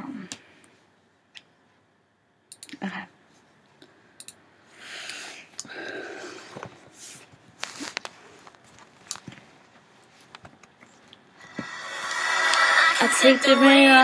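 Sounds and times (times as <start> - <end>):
breathy swells: 11.4 - 13.5.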